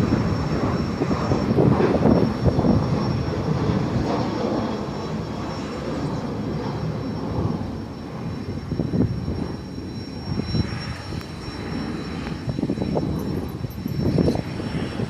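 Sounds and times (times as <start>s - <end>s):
jet engine high whine: 0.0s - 15.0s
jet engines roaring: 0.0s - 15.0s.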